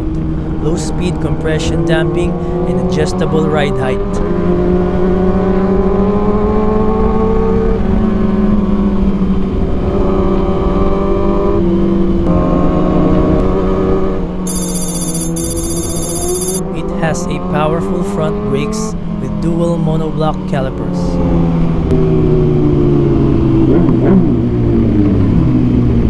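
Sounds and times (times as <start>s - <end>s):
motorcycle engine running: 0.0s - 19.8s
high ringing electronic tone: 14.5s - 16.8s.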